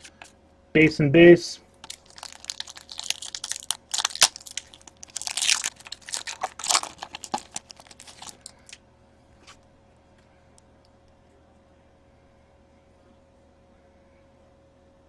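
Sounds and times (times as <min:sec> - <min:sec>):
foil wrapper crinkling and tearing: 0:01.8 - 0:08.8.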